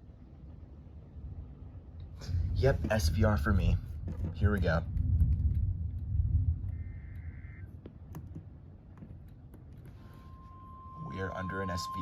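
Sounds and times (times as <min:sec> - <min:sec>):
low rumble: 0:00.0 - 0:07.8
loud steady warning alarm tone: 0:06.7 - 0:07.8, 0:10.0 - 0:12.0
warbling data burst: 0:10.2 - 0:12.0.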